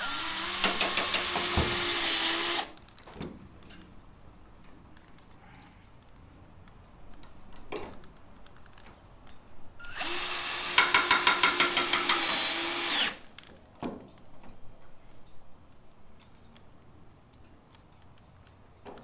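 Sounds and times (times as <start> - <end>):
power drill driving a screw: 0.0 - 2.8, 9.8 - 13.2.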